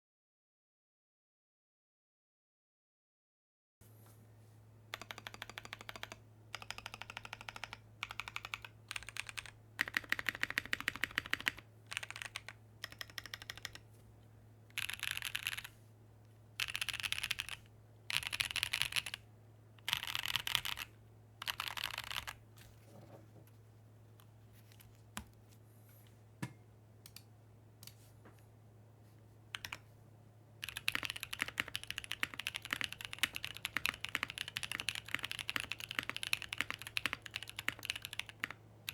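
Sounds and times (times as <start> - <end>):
mechanical keyboard typing: 4.9 - 13.8, 14.7 - 15.7, 16.6 - 19.2, 19.8 - 22.4, 29.5 - 29.8, 30.6 - 38.9.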